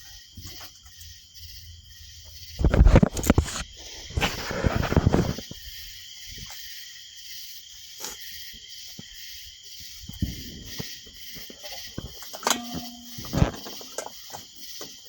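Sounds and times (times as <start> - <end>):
insects chirring: 0.0 - 15.0
scattered clicks and knocks: 10.2 - 15.0.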